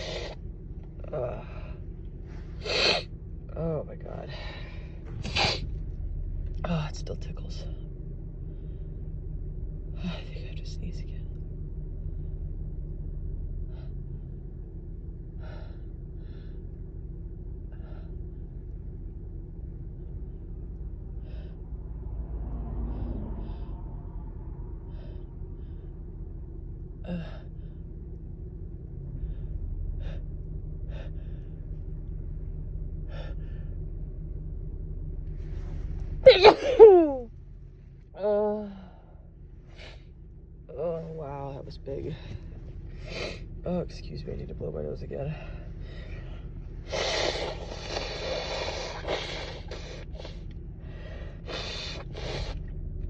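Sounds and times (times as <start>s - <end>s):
woman's sharp breaths: 0.0s - 0.4s, 2.4s - 3.1s, 45.4s - 52.6s
steady low hum: 0.0s - 53.0s.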